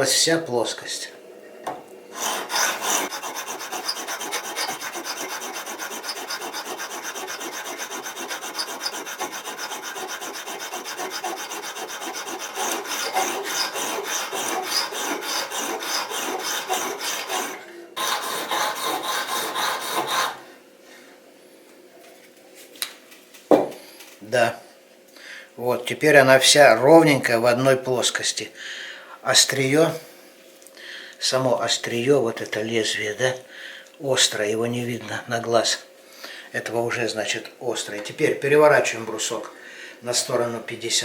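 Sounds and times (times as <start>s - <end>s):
sharpening bar scraping steel blade: 2.2s - 20.4s.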